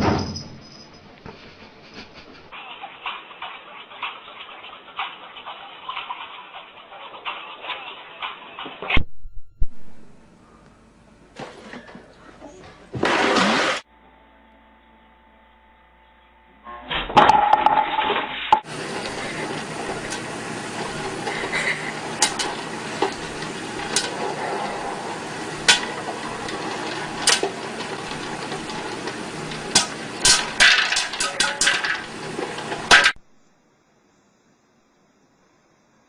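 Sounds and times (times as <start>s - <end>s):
noisy background: 18.6s - 33.2s.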